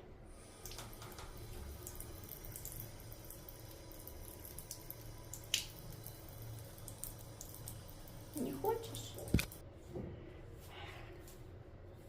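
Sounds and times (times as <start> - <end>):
water running from a tap: 0.3 - 9.6.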